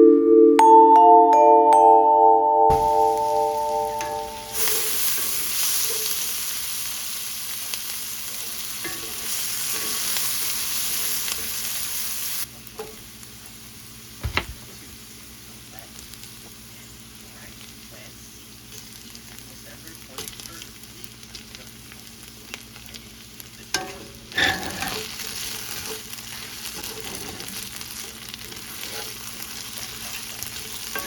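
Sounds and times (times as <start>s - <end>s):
food sizzling in a pan: 2.7s - 31.0s
knock: 14.2s - 14.6s.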